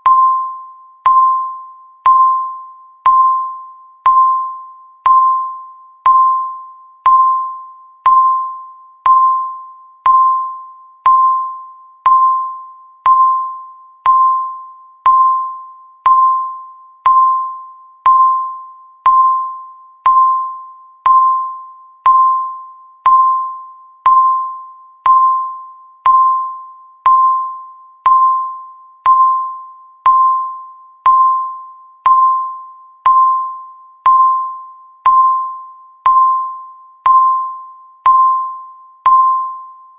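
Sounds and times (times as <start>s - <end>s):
electronic timer ding: 0.0s - 39.9s.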